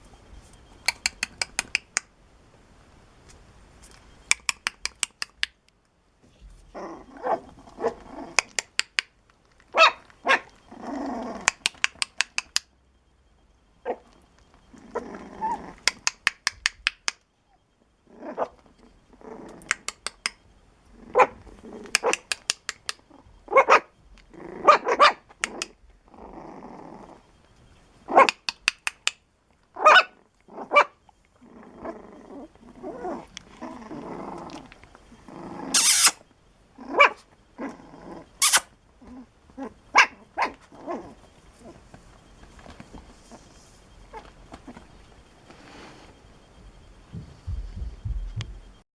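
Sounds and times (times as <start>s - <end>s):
dog barking and growling: 6.7s - 8.9s, 9.7s - 12.6s, 13.8s - 16.3s, 18.0s - 20.3s, 20.9s - 27.3s, 28.0s - 28.5s, 29.8s - 36.2s, 36.8s - 41.8s.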